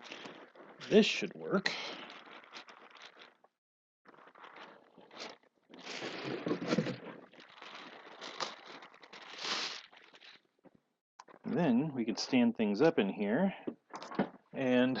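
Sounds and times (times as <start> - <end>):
packing foam rustling and crinkling: 0.0 - 3.5, 4.1 - 10.6.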